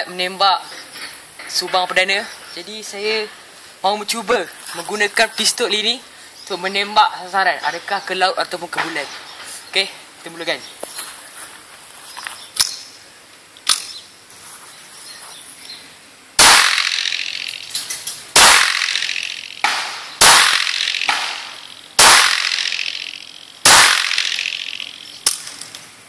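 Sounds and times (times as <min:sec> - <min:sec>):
loud pistol shots: 0:16.4 - 0:17.6, 0:18.3 - 0:24.9
faint sharp cracks: 0:16.4 - 0:23.1.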